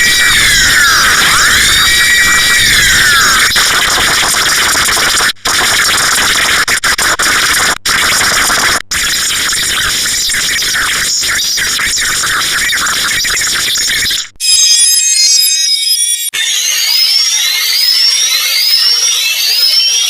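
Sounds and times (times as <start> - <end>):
sped-up alert broadcast noise: 0.0 - 15.2.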